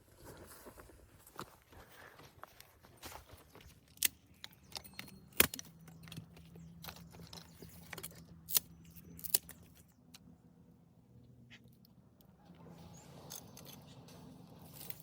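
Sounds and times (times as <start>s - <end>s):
objects clicking and knocking: 3.5s - 10.2s.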